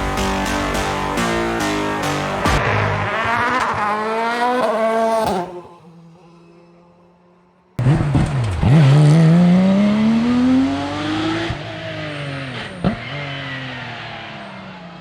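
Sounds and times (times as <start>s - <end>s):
rally car engine at full throttle: 0.0s - 15.0s.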